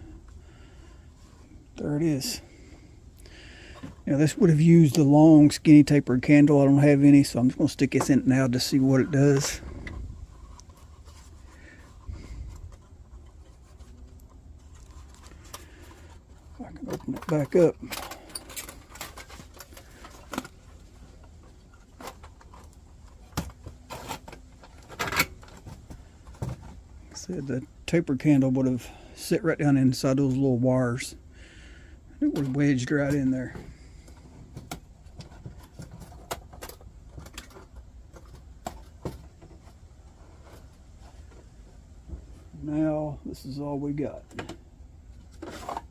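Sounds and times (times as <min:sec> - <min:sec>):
metal lantern parts clinking: 0:17.1 - 0:20.2.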